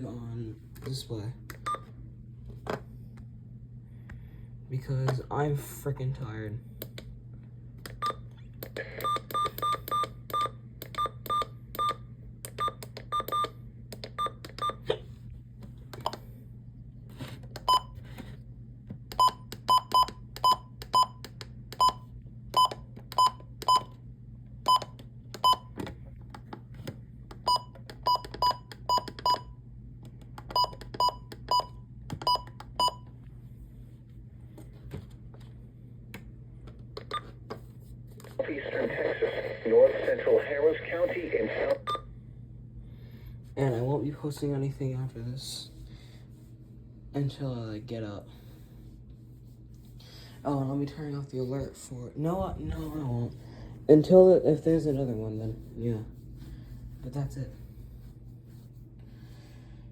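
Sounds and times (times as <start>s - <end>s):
low steady hum: 0.0s - 59.9s
key-press beeps: 7.9s - 15.0s, 17.6s - 18.0s, 19.1s - 24.0s, 24.6s - 25.8s, 27.4s - 29.6s, 30.4s - 33.1s, 37.0s - 37.3s.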